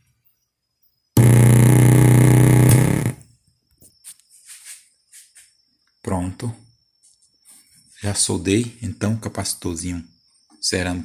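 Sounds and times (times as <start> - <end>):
loud loudspeaker buzz: 1.2 - 3.2.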